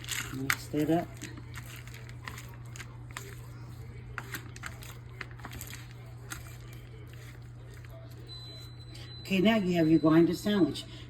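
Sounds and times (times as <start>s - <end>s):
salad crinkling and crackling: 0.0s - 8.8s.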